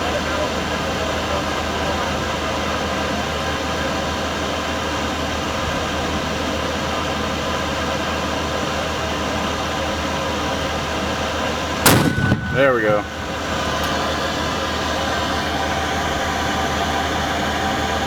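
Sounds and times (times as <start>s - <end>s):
constant low hum: 11.8s - 17.8s.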